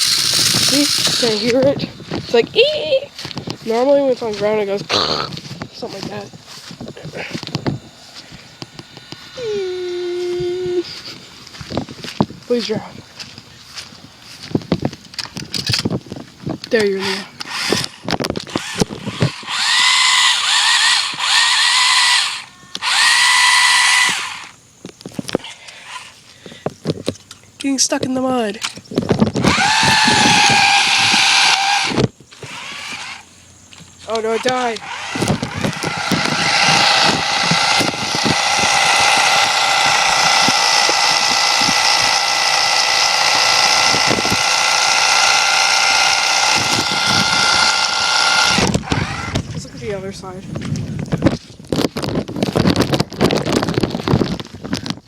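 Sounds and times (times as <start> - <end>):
toy car electric motor whining: 0.0 - 2.5, 8.5 - 11.0, 16.8 - 24.6, 25.3 - 26.2, 29.2 - 49.5.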